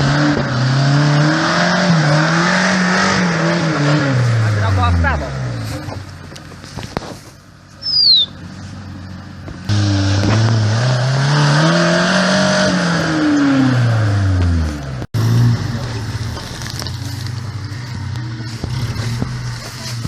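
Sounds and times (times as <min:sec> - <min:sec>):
engine revving under load: 0:00.0 - 0:06.0, 0:09.5 - 0:20.0.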